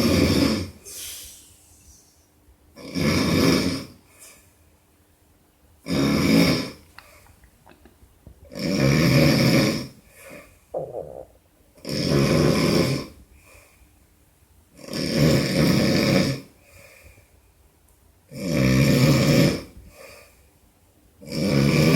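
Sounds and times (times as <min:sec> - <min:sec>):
man snoring loudly: 0:00.0 - 0:00.8, 0:02.8 - 0:04.0, 0:05.8 - 0:06.8, 0:08.5 - 0:10.0, 0:11.8 - 0:13.2, 0:14.8 - 0:16.5, 0:18.3 - 0:19.7, 0:21.2 - 0:21.9
quiet breathing: 0:00.8 - 0:02.4, 0:04.0 - 0:04.8, 0:06.8 - 0:07.4, 0:09.9 - 0:10.8, 0:13.0 - 0:14.2, 0:16.5 - 0:17.7, 0:19.7 - 0:20.6.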